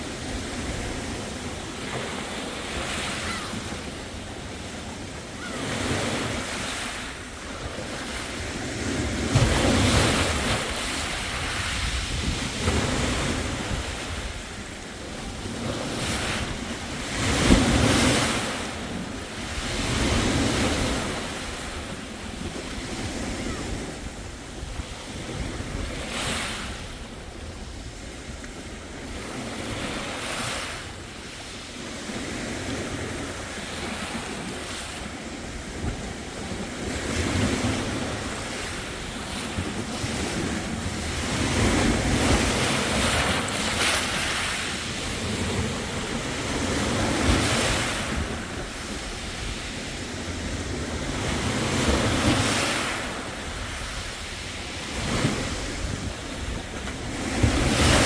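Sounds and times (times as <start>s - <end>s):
sea waves breaking on beach: 0.0s - 58.0s.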